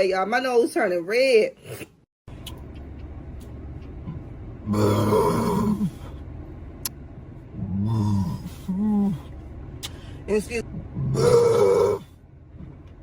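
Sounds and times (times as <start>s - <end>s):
person belching: 4.7s - 6.0s, 7.6s - 9.2s, 10.8s - 12.0s.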